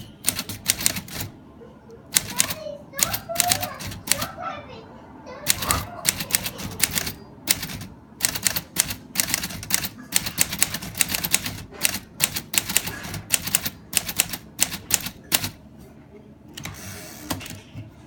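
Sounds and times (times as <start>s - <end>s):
typewriter key strikes: 0.2s - 1.3s, 2.2s - 4.2s, 5.5s - 15.6s.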